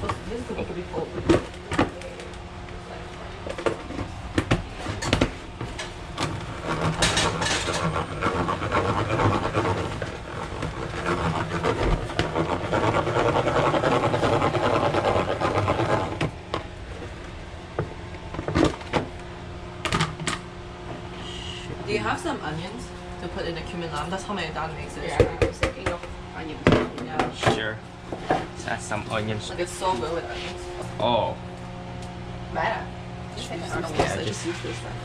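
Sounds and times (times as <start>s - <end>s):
kitchen knocks and clatter: 4.4s - 8.0s.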